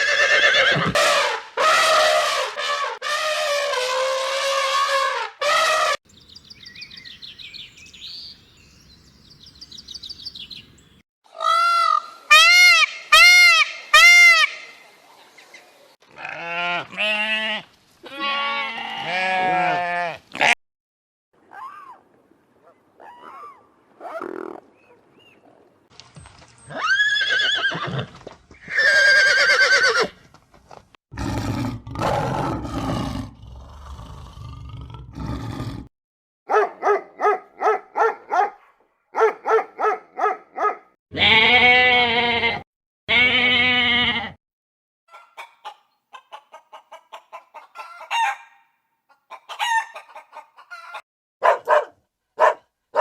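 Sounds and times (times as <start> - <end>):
chickens clucking: 45.1 - 48.3, 49.1 - 51.0
chicken crowing: 47.7 - 48.7, 49.4 - 51.0.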